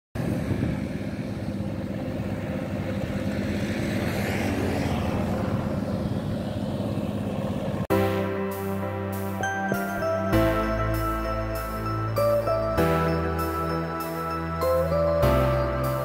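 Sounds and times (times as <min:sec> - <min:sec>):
engine running: 0:00.2 - 0:16.0.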